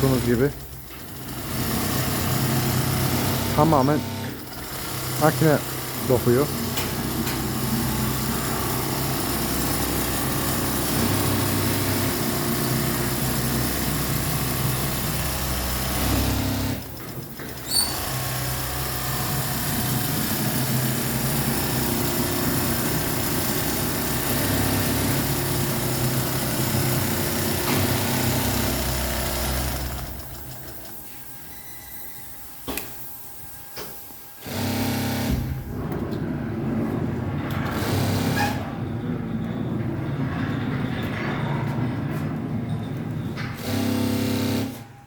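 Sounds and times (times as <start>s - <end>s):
sewing machine running: 0.0s - 32.1s, 34.4s - 35.6s, 37.7s - 38.6s, 43.6s - 44.9s.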